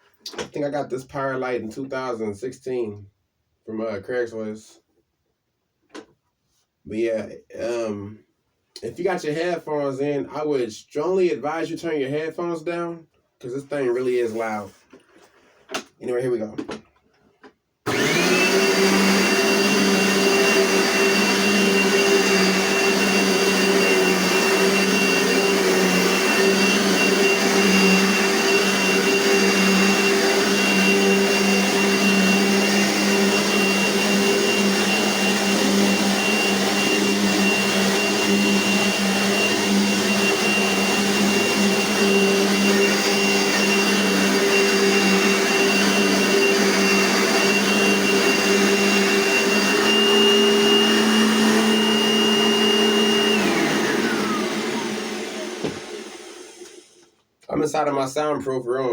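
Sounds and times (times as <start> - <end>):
vacuum cleaner motor whining: 17.9 - 57.1.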